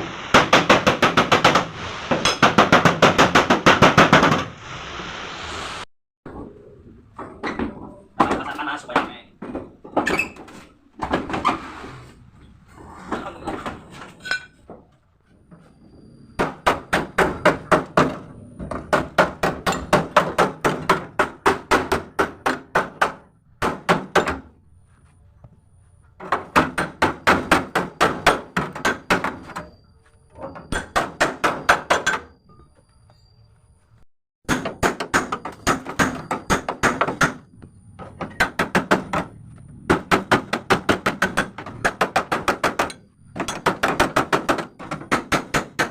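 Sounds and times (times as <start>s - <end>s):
hammer blows on sheet metal: 0.3s - 4.6s.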